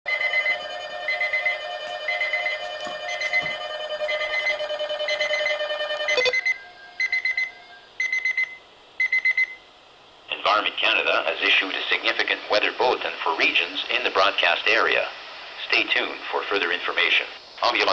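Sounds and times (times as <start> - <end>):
steady electronic tone: 0.1 - 8.0
pulsing alert beep: 0.1 - 8.4.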